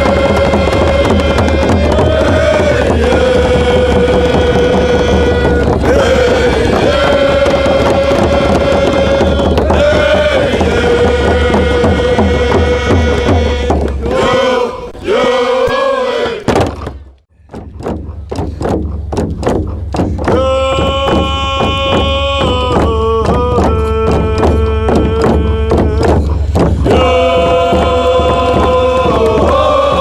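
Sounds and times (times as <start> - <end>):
choir-like music over bass: 0.0 - 16.5, 26.8 - 30.0.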